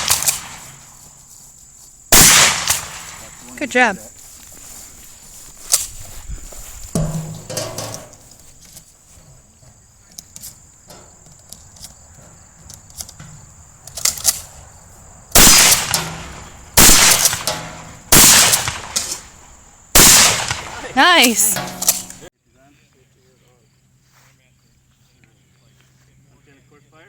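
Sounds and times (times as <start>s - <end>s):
shotgun shots with echo: 0.0s - 0.8s, 2.1s - 3.4s, 15.4s - 19.3s, 20.0s - 22.2s.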